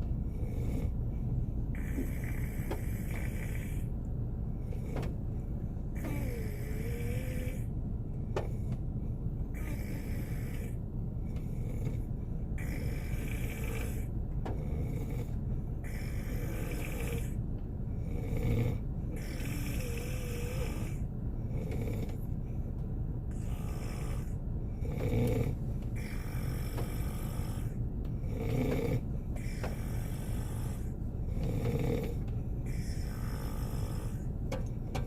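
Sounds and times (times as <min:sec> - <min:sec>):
steady low rumble: 0:00.0 - 0:35.0
man snoring: 0:00.3 - 0:01.0, 0:01.7 - 0:03.9, 0:06.0 - 0:07.7, 0:09.5 - 0:10.8, 0:11.4 - 0:17.4, 0:18.0 - 0:22.2, 0:23.3 - 0:34.3.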